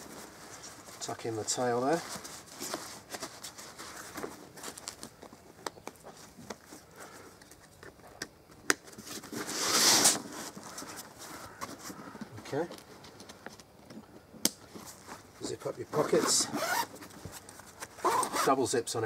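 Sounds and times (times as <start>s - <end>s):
nylon bag fabric rustling: 0.0s - 5.3s, 14.8s - 18.6s
fabric rasp: 16.2s - 16.9s.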